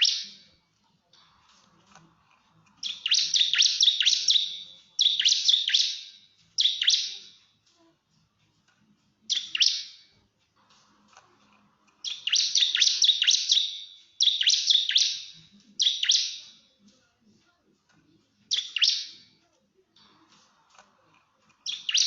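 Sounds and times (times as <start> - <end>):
bird chirping rapidly: 0.0 - 0.4, 2.8 - 7.4, 9.3 - 10.0, 12.0 - 16.6, 18.5 - 19.2, 21.6 - 22.0.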